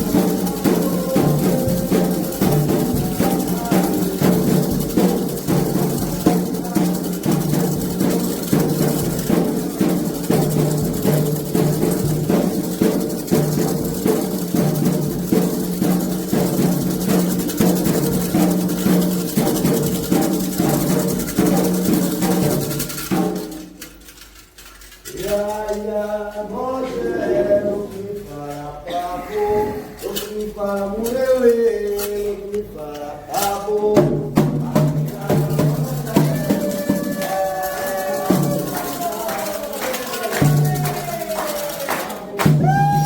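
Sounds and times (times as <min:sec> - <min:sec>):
held sung tones: 0:00.0 - 0:06.9, 0:25.1 - 0:43.0
hand drums beating fast rhythm: 0:00.0 - 0:23.8, 0:33.5 - 0:43.0.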